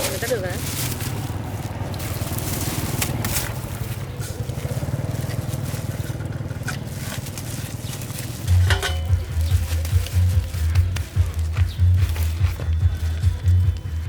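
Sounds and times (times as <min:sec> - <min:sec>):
small engine running: 0:00.0 - 0:14.0
music with heavy beat: 0:08.4 - 0:14.0.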